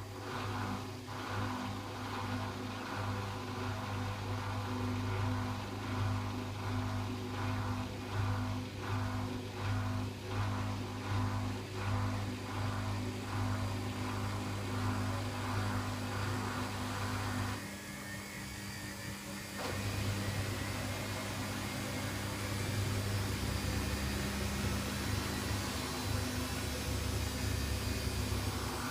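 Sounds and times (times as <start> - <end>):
washing machine motor hum: 0.0 - 28.9.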